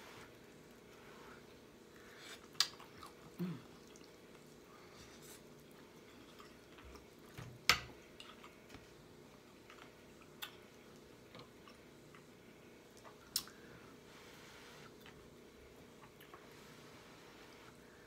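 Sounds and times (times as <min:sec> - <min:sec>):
person chewing food: 0:01.9 - 0:07.4, 0:08.0 - 0:13.7, 0:14.8 - 0:16.6.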